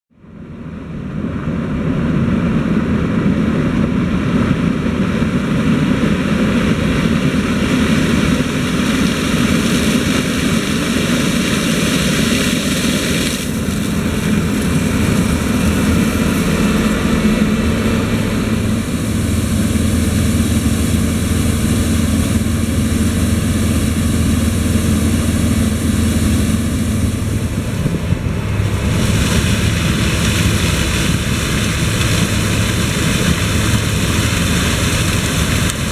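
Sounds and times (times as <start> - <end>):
deep engine hum: 0.1 - 35.9
combine harvester running: 0.2 - 35.9.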